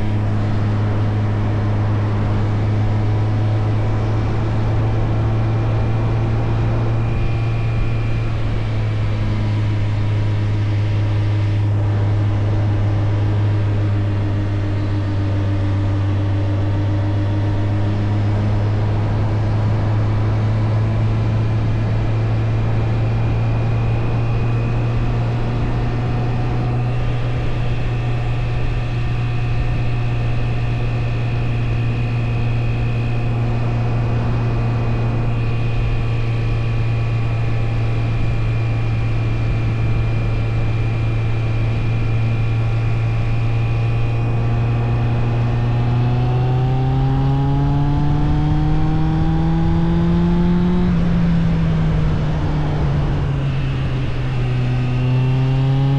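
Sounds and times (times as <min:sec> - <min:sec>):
motorcycle engine running: 0:00.0 - 0:55.9.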